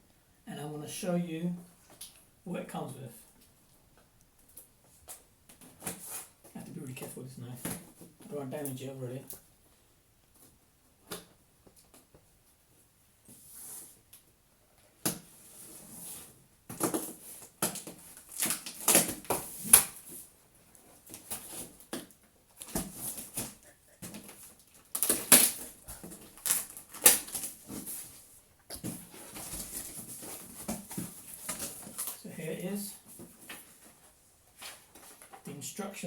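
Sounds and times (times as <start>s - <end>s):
cardboard box packing rustling: 15.2s - 35.4s.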